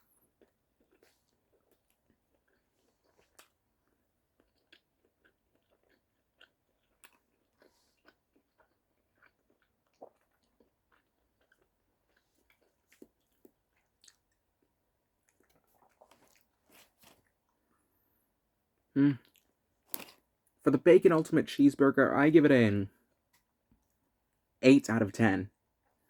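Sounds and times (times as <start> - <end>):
chewing food: 0.0 - 17.9, 18.8 - 20.6.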